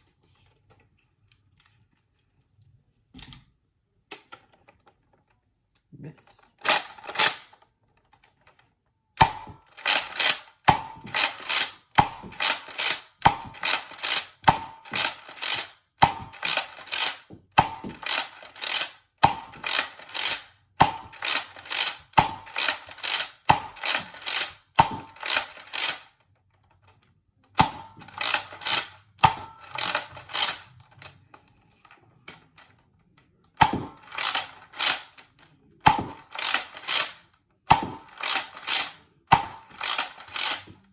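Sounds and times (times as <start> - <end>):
toy blaster pump and firing: 6.6 - 7.6, 9.2 - 26.2, 27.6 - 31.2, 33.6 - 40.9.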